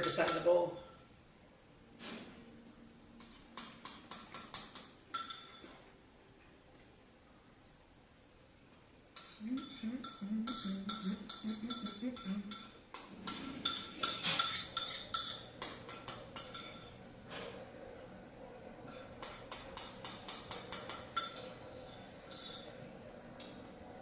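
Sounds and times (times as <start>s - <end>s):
metal spoon scraping bowl: 9.2s - 17.6s, 18.9s - 22.8s.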